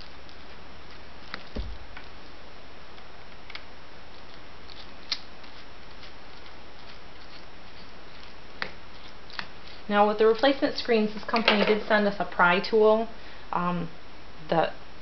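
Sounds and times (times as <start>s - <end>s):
soft thump: 1.6s - 1.8s.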